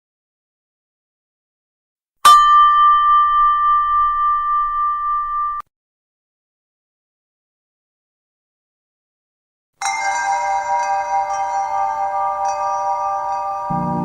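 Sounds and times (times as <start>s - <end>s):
struck bell ringing: 2.2s - 5.6s.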